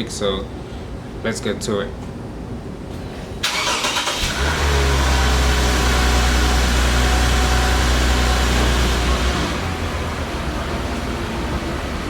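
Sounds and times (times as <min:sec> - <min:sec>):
car engine starting and idling: 0:03.4 - 0:12.0.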